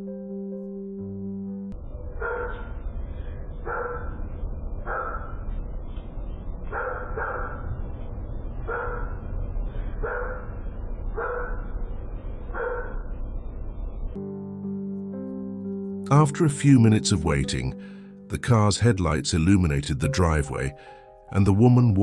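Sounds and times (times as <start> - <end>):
dog barking: 2.2 - 2.8, 3.6 - 5.5, 6.7 - 7.8, 8.6 - 9.3, 10.0 - 11.8, 12.5 - 13.1.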